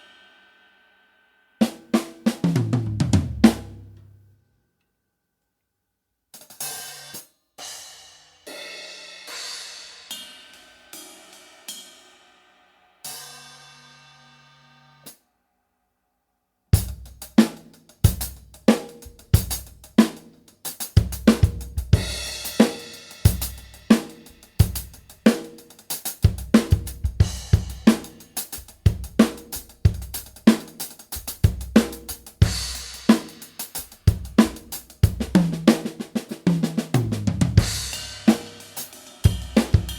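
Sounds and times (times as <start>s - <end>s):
drum kit groove: 1.6s - 4.0s, 16.8s - 39.9s.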